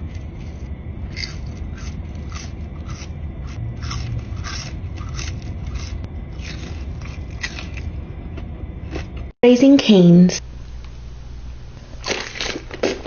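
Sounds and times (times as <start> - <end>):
person chewing crunchy food: 0.0 - 9.3, 11.9 - 13.0
low steady rumble: 0.0 - 13.0.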